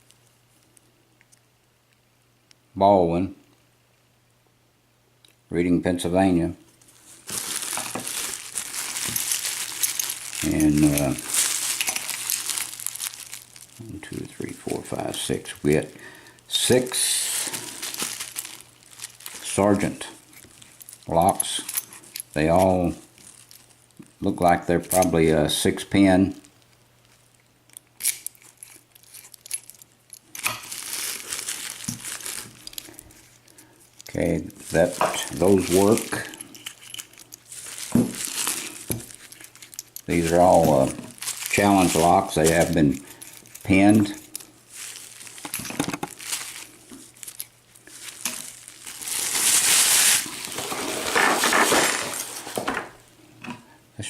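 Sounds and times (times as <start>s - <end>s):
packaging crinkling: 6.7s - 25.3s, 26.2s - 53.0s
keys jangling: 28.0s - 30.4s, 35.8s - 37.7s.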